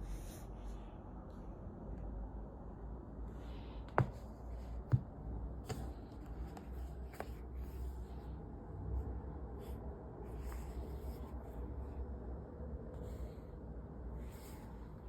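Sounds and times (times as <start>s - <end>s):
steady low hum: 0.0s - 15.0s
book pages rustling: 3.7s - 8.4s, 9.6s - 11.8s.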